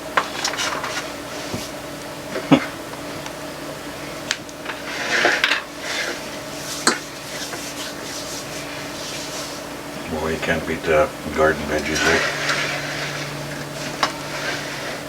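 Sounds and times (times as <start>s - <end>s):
fork scraping across plate: 4.7s - 9.6s, 11.7s - 15.0s
utensils clinking on plates: 11.6s - 15.0s.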